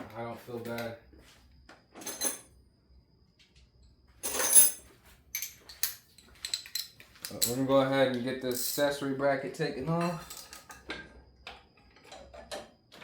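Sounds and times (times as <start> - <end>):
metal tools clattering: 2.0 - 2.5, 4.2 - 9.1, 9.9 - 11.1
metal tools clinking: 2.0 - 2.5, 4.2 - 9.0, 9.9 - 10.9.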